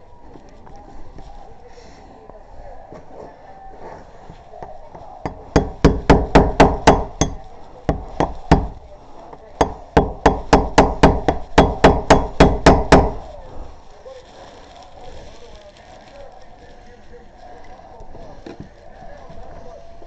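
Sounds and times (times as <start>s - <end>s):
sharp knocks against door: 5.3s - 8.8s, 9.6s - 13.2s.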